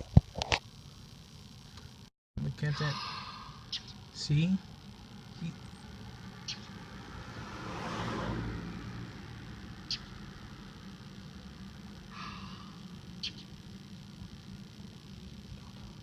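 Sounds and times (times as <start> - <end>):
bird chirps: 3.7 - 4.0, 6.4 - 6.7
car passing by: 7.0 - 9.4.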